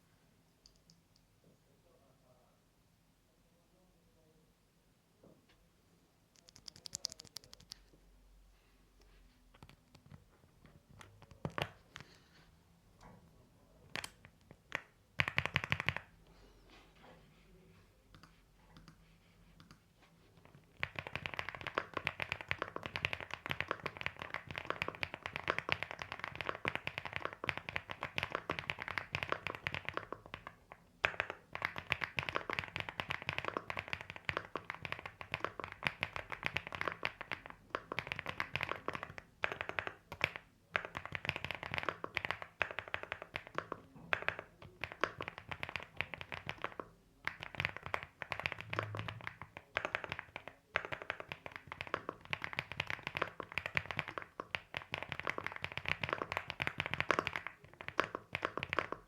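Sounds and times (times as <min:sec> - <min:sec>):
mechanical keyboard typing: 0:06.4 - 0:07.8, 0:13.9 - 0:16.1, 0:20.4 - 0:59.0.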